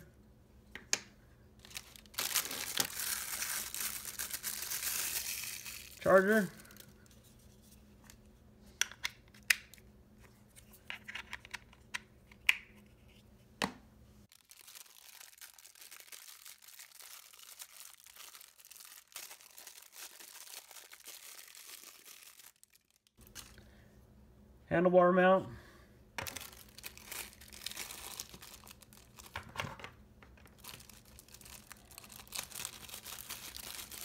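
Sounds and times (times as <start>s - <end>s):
plastic packaging crinkling: 1.6s - 7.2s, 14.3s - 23.6s, 26.2s - 29.6s, 30.3s - 34.0s.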